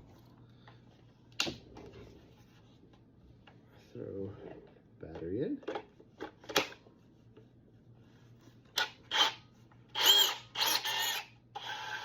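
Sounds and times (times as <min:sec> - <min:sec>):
bandsaw motor spinning up and down: 0:10.0 - 0:12.0.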